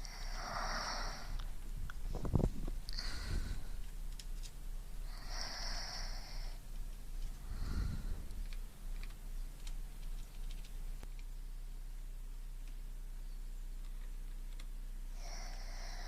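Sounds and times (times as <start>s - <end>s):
person breathing: 0.0s - 3.9s, 5.0s - 8.8s, 15.1s - 16.0s
faint clicks: 0.0s - 4.6s, 8.2s - 11.3s, 13.8s - 14.7s.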